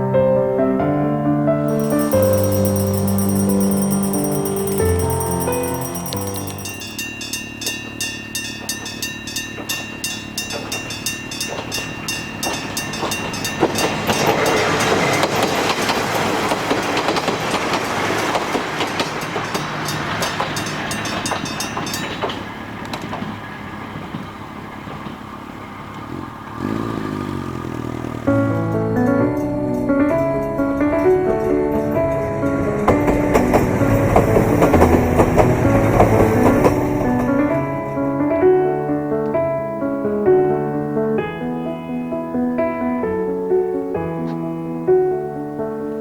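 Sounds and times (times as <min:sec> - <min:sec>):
level crossing bell ringing: 0:01.7 - 0:17.4, 0:18.4 - 0:22.6
train rumbling past: 0:01.7 - 0:28.2, 0:32.6 - 0:37.9.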